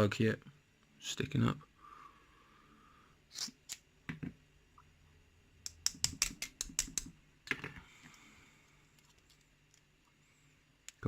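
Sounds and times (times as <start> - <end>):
lock cylinder clicks and taps: 5.6 - 7.1.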